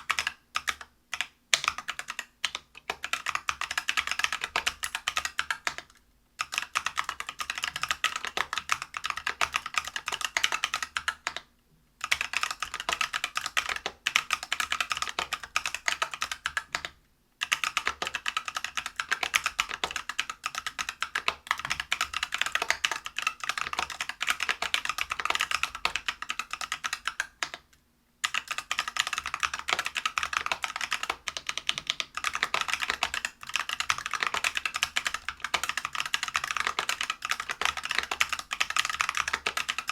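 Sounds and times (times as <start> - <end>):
mechanical keyboard typing: 0.0 - 11.4, 12.0 - 27.6, 28.2 - 39.9.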